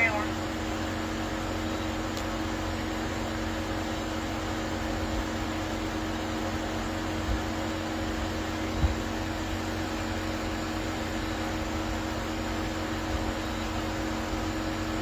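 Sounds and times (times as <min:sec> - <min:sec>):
constant low tones: 0:00.0 - 0:00.4
steady hum and hiss: 0:00.0 - 0:15.0.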